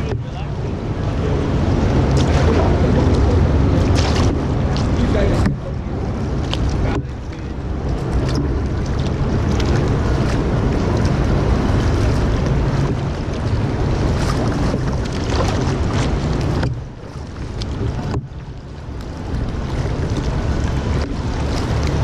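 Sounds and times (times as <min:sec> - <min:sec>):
water lapping around kayak: 0:00.0 - 0:22.0
wind buffeting microphone: 0:00.0 - 0:22.0
brief splashes: 0:01.8 - 0:05.5.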